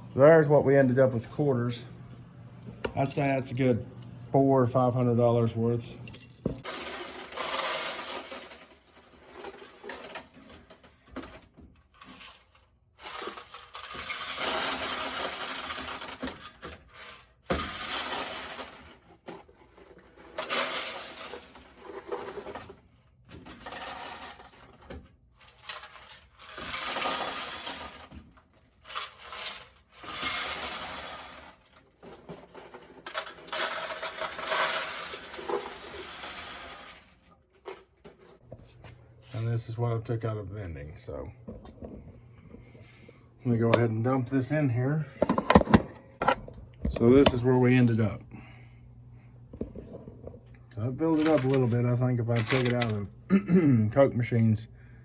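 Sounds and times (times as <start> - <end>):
coins clinking and jingling: 6.1 - 38.4, 51.1 - 51.8, 52.4 - 53.0.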